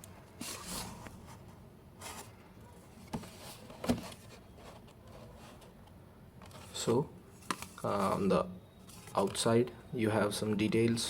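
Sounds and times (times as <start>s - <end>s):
box rustling: 0.4s - 5.8s.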